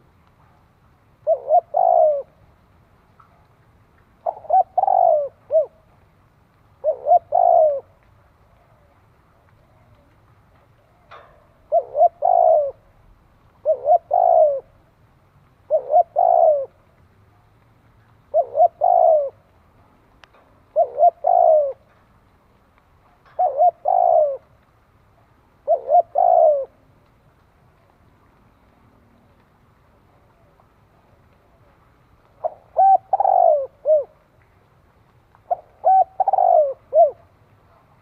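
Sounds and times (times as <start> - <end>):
dove cooing: 1.2 - 2.5, 4.2 - 6.0, 6.8 - 13.0, 13.6 - 14.9, 15.6 - 17.0, 18.3 - 19.5, 20.7 - 22.0, 23.1 - 24.6, 25.6 - 26.9, 32.4 - 34.2, 35.4 - 38.0.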